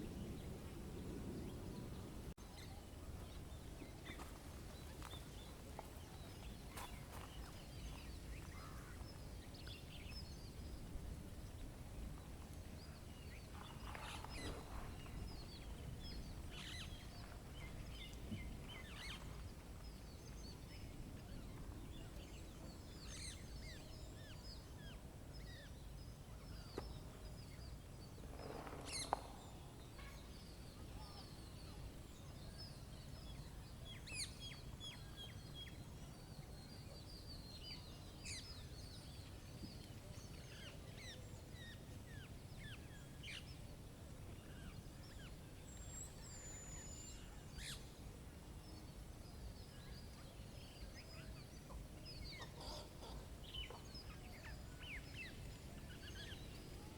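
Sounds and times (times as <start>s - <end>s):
small birds chirping: 0.0s - 56.9s.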